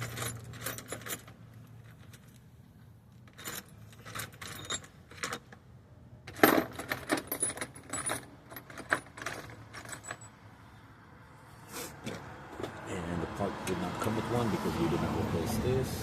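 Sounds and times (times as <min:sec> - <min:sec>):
metal parts clinking: 0:00.0 - 0:02.4, 0:03.1 - 0:05.6, 0:06.3 - 0:10.4.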